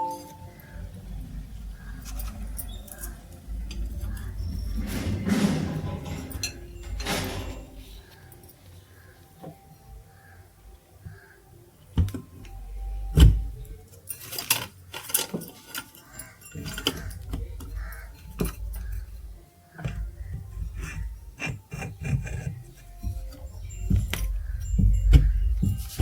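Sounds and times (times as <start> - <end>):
handling and rubbing noise: 0.4 - 8.4, 15.4 - 26.0
small metal parts clinking: 13.9 - 20.0.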